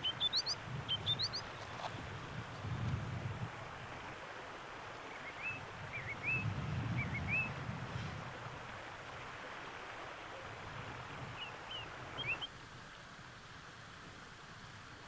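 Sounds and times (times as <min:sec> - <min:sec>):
bird chirping: 0:00.0 - 0:01.9
river flowing: 0:00.0 - 0:06.4, 0:07.1 - 0:15.0.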